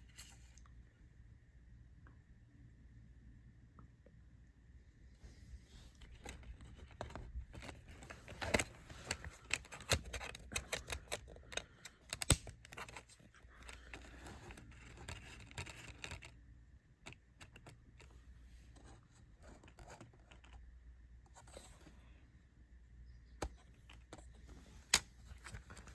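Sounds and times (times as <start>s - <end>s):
packaging scratching and rustling: 6.0s - 16.3s.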